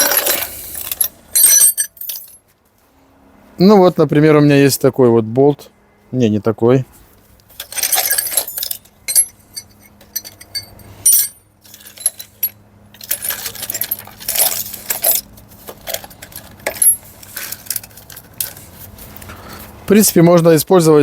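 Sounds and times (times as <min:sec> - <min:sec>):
metal bolts clinking and rattling: 0:00.0 - 0:02.5, 0:07.5 - 0:19.4.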